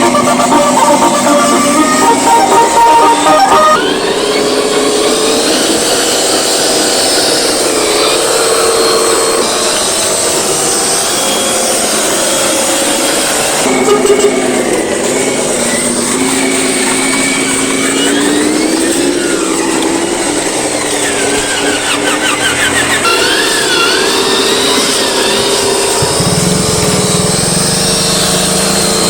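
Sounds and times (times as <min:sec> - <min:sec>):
faint warbling tones: 0:00.0 - 0:05.4
vehicle motor running: 0:00.0 - 0:29.0.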